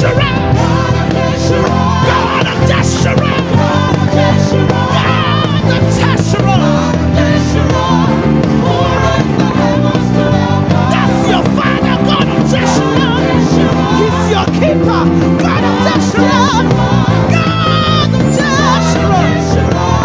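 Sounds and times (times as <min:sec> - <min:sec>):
band playing: 0:00.0 - 0:20.0
bass guitar low notes: 0:00.0 - 0:20.0
voices singing with vibrato: 0:00.0 - 0:20.0.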